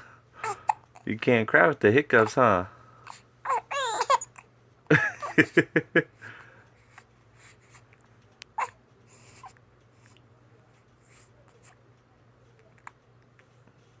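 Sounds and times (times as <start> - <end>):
baby hiccuping sobs: 3.1 - 4.4
baby whimpering: 3.1 - 4.4, 8.6 - 9.6.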